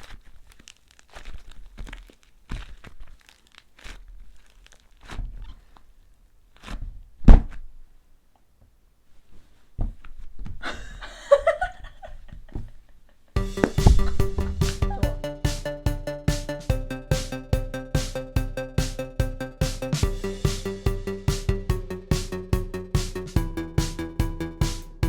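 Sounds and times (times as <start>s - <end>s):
clay crackling and crunching: 0.0s - 8.0s
loud thump: 13.4s - 15.2s.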